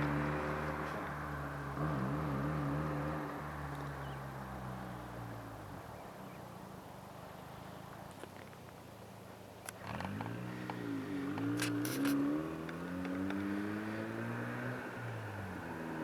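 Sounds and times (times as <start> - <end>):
rotary car engine running: 9.7 - 16.0.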